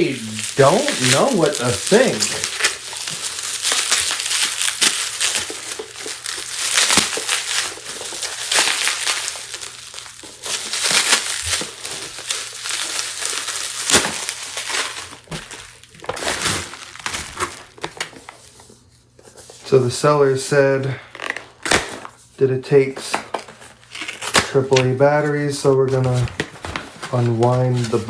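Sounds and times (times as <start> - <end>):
sharp crackles and knocks: 0.0 - 18.4
cardboard crinkling and crunching: 0.0 - 19.6, 20.3 - 28.0.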